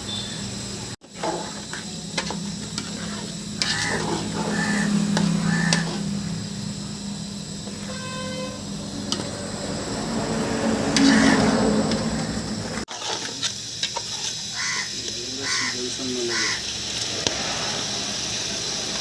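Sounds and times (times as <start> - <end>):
food sizzling in hot oil: 0.0 - 19.0
spoon scraping a pan: 1.0 - 6.3, 10.6 - 15.7.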